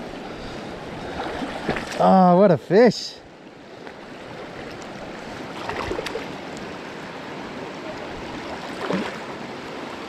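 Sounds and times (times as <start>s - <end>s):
river water rushing: 0.0s - 10.0s
faint splashes: 1.0s - 2.2s, 3.9s - 6.4s, 7.8s - 9.4s.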